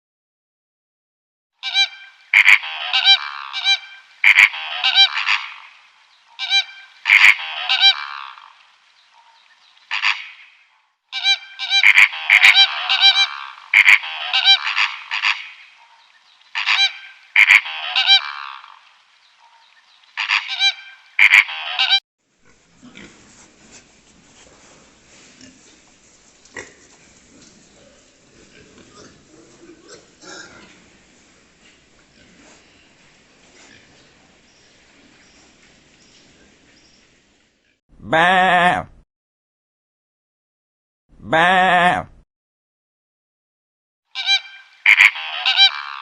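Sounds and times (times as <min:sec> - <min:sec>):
bird calling: 0:01.6 - 0:22.0.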